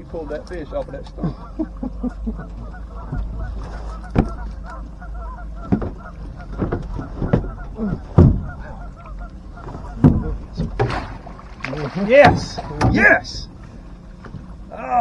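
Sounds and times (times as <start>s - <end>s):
geese honking: 0.0s - 15.0s
loud thumps: 5.6s - 8.8s, 9.6s - 13.4s.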